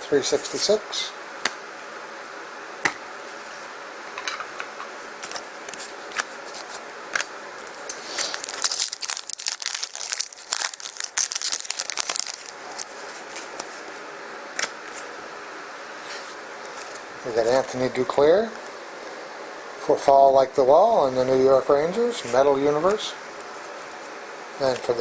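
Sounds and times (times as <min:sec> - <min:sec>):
foil wrapper crinkling: 0:07.7 - 0:13.8, 0:24.6 - 0:25.0.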